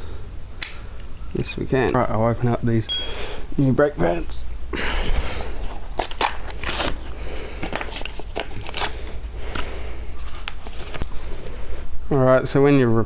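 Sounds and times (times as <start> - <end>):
packaging crinkling: 7.6 - 9.2.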